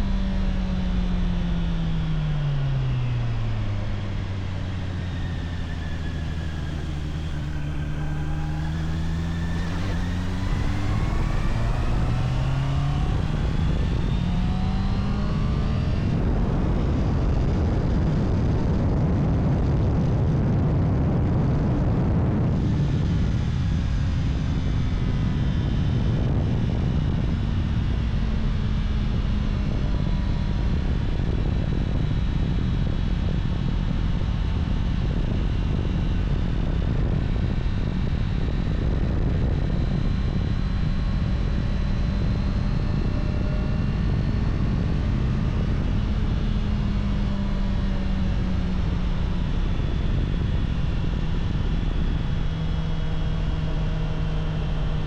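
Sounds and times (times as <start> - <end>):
steady rushing noise: 0.0 - 27.3
motorcycle engine cruising: 0.0 - 55.0.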